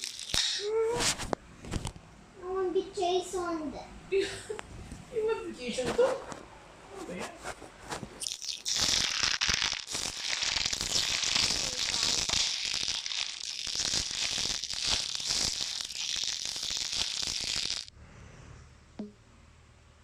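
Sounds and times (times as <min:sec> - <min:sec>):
dense crackling and crinkling: 0:07.1 - 0:17.9.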